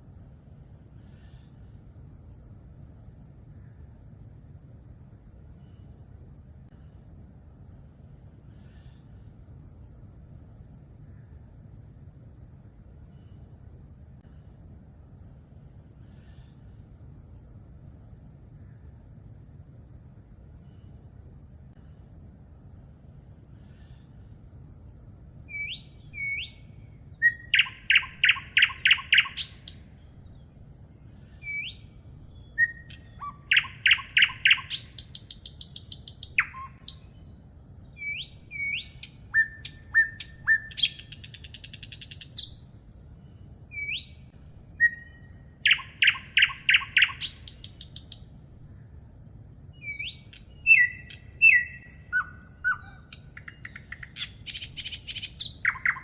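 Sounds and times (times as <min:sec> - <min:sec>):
songbirds singing: 0:23.6 - 0:56.0
rising bird call notes: 0:25.5 - 0:29.7
bird trill: 0:25.5 - 0:42.6, 0:43.7 - 0:48.2, 0:49.2 - 0:56.0.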